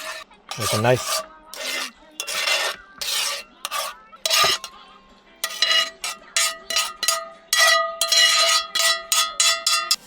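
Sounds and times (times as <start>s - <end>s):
metal utensil scraping a pan: 0.0s - 4.8s, 5.4s - 10.0s.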